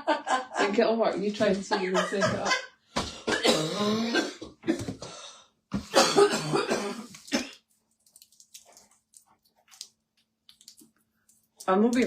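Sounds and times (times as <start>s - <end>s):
person coughing: 3.0s - 5.0s, 5.8s - 7.6s.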